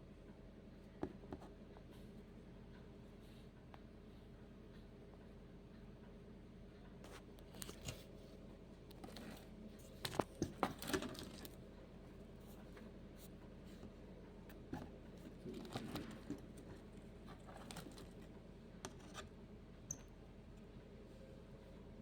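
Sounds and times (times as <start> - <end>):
faint clicks and scratching: 6.8 - 20.7.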